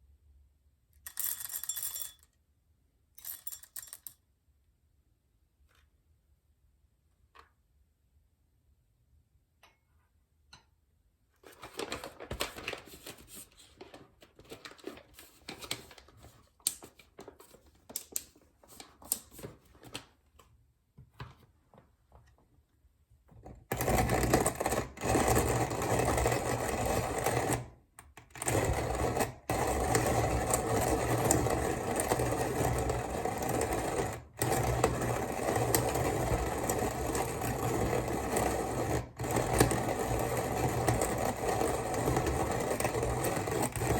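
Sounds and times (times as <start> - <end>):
hand coffee grinder crunching beans: 23.7 - 43.9.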